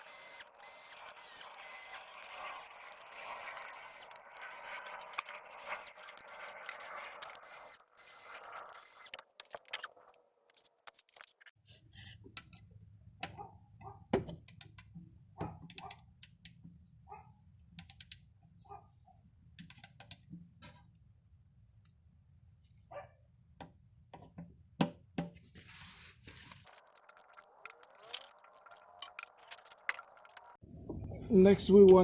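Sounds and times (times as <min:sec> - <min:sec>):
wrench clicking on bolts: 0:17.8 - 0:18.2, 0:19.6 - 0:20.2.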